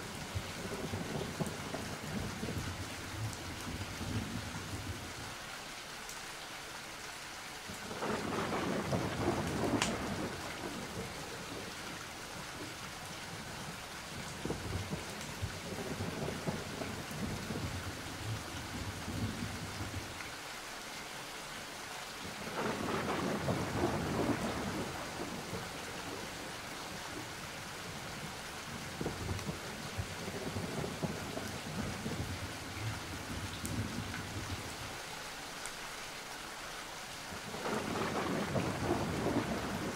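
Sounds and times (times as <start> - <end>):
steady rain: 0.0 - 39.9
rolling thunder with sharp crack: 0.3 - 2.8, 7.9 - 11.7, 22.4 - 26.3, 28.8 - 34.7, 37.5 - 39.9.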